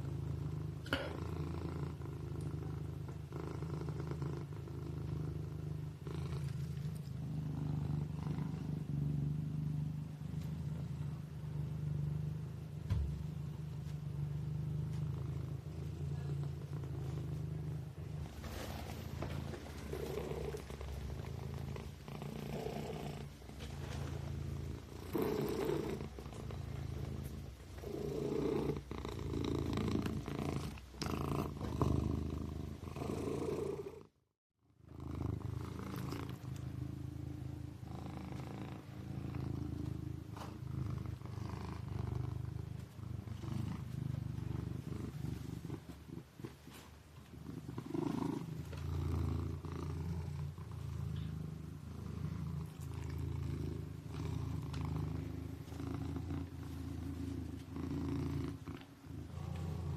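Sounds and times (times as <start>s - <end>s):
kitten purring: 0.0s - 59.9s.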